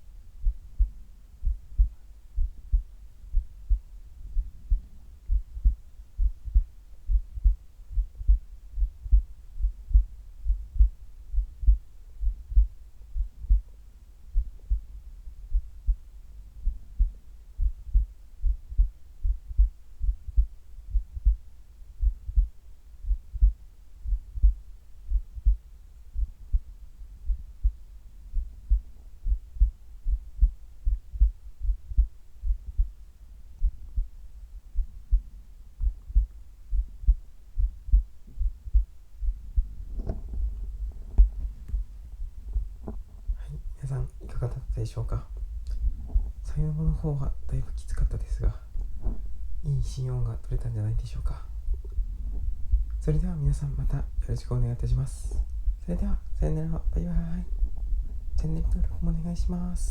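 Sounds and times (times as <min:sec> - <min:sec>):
heartbeat thudding: 0:00.0 - 0:59.9.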